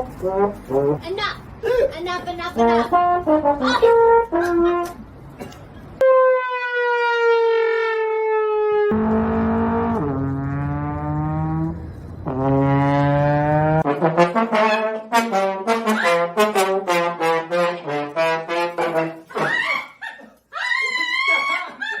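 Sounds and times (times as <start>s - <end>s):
brass instrument comic notes: 0.0s - 1.2s, 2.5s - 5.0s, 6.0s - 19.7s.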